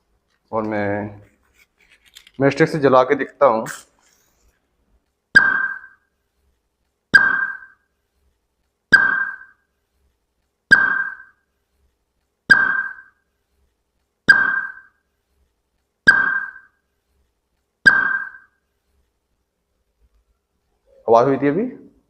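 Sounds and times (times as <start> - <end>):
electronic ping: 5.4 - 6.0, 7.2 - 7.8, 8.9 - 9.6, 10.7 - 11.4, 12.5 - 13.2, 14.3 - 15.0, 16.1 - 16.8, 17.9 - 18.6.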